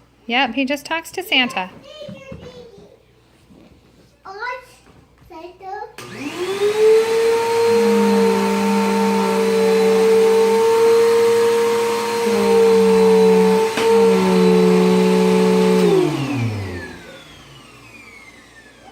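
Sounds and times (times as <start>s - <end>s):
vacuum cleaner motor humming: 6.0s - 18.9s.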